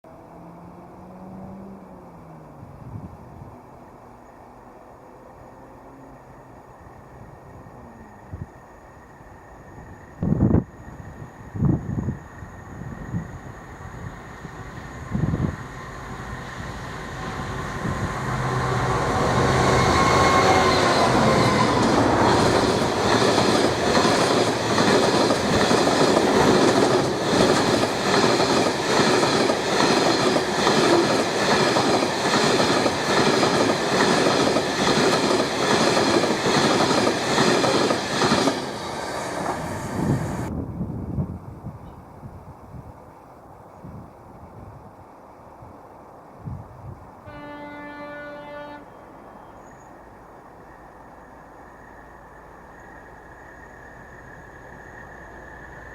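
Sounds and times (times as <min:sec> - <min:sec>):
locomotive engine passing: 0:00.1 - 0:10.0, 0:12.5 - 0:40.5.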